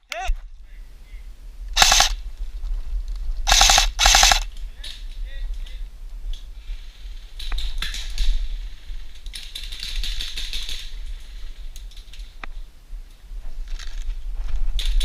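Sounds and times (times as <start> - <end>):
airsoft guns firing: 1.8 - 2.2, 3.5 - 4.5.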